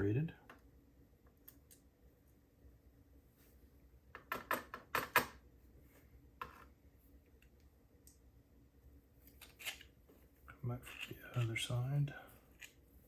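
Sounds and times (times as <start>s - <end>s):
small metal lock parts clicking: 9.3s - 9.9s.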